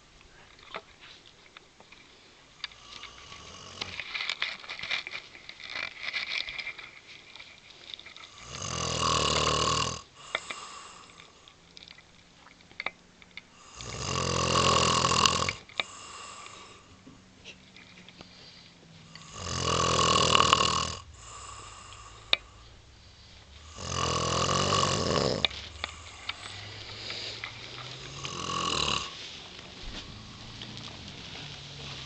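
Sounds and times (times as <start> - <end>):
person snoring loudly: 2.8 - 4.0, 8.3 - 11.1, 13.6 - 16.9, 19.1 - 22.8, 23.6 - 29.2.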